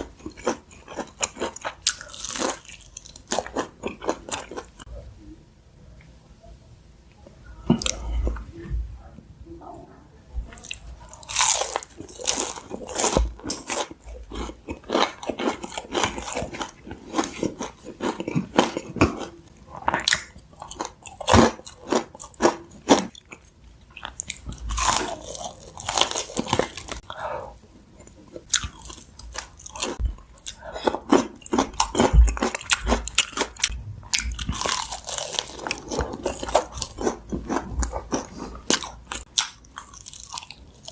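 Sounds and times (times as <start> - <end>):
biting and chewing fried chicken: 0.0 - 4.9, 10.5 - 27.2, 28.0 - 40.9.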